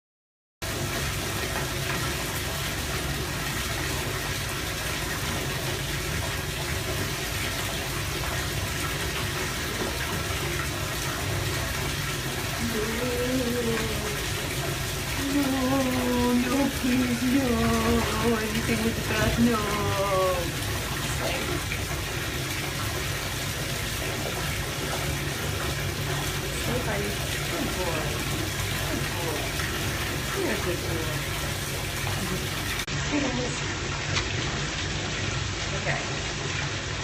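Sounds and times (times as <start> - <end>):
water running from bath tap: 0.6 - 37.0
person speaking: 12.6 - 14.4, 15.2 - 21.7.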